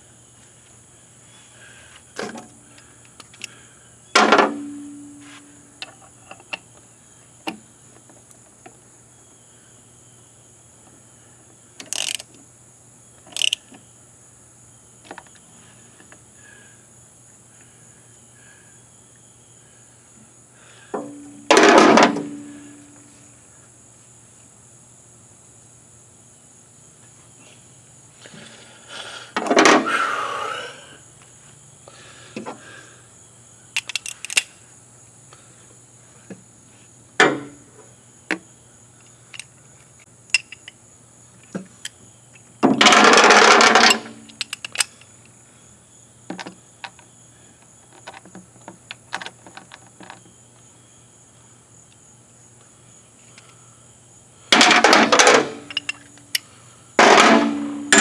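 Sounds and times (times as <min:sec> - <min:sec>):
insect chirr: 0:00.0 - 0:58.0
hand tools clinking: 0:33.8 - 0:34.5, 0:40.3 - 0:40.7, 0:54.6 - 0:56.4.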